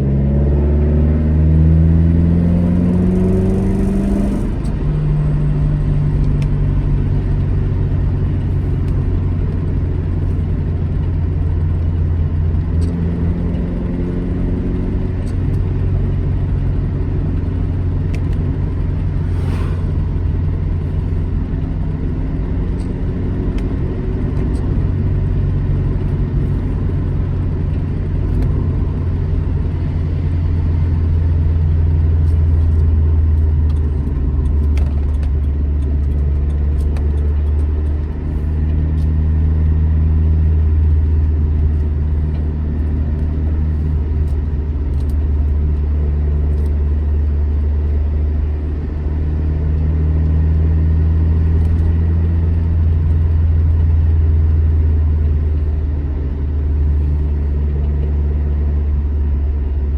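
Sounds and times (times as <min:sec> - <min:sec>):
car engine droning: 0:00.0 - 0:59.9.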